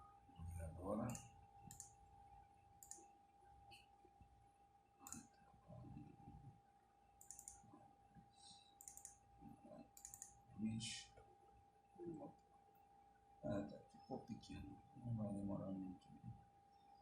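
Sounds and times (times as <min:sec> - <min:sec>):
faint steady hum: 0:00.0 - 0:17.0
computer mouse clicks: 0:01.0 - 0:02.0, 0:02.8 - 0:03.1, 0:05.0 - 0:05.4, 0:07.2 - 0:07.7, 0:08.8 - 0:09.2, 0:09.9 - 0:10.4.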